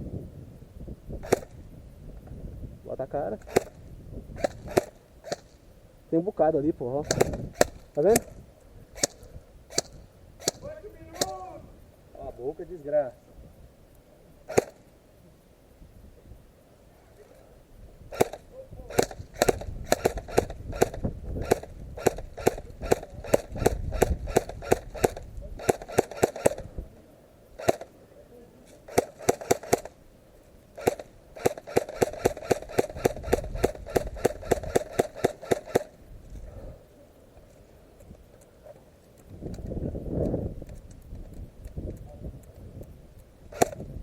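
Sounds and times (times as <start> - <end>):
airsoft gun shots: 1.2 - 1.6, 3.4 - 3.8, 4.4 - 5.6, 7.0 - 11.6, 14.5 - 14.8, 18.1 - 26.7, 27.6 - 27.9, 28.9 - 30.0, 30.8 - 36.0, 43.5 - 43.9.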